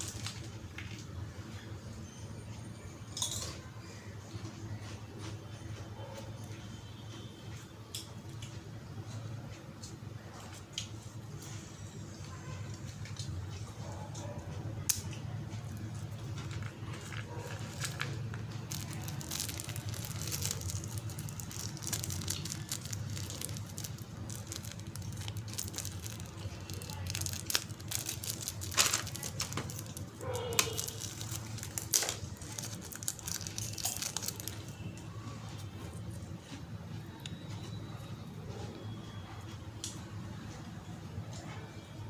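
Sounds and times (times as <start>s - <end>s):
plastic wrappers crinkling: 0.0s - 1.2s, 15.4s - 36.2s.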